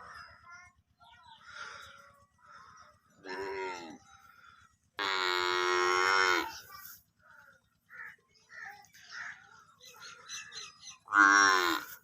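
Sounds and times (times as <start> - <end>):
buffalo calf bawling: 5.0 - 7.0, 11.0 - 12.0.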